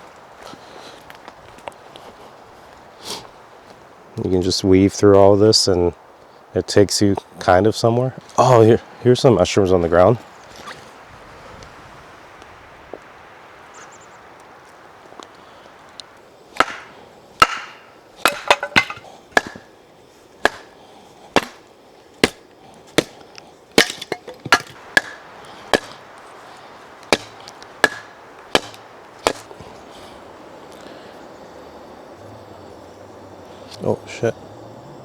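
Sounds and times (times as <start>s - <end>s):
axe chopping wood: 16.6s - 19.7s, 20.4s - 26.1s, 27.0s - 29.7s.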